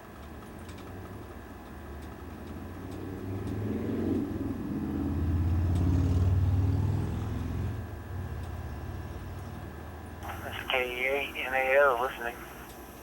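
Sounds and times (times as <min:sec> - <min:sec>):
faint steady hum: 0:07.4 - 0:13.0.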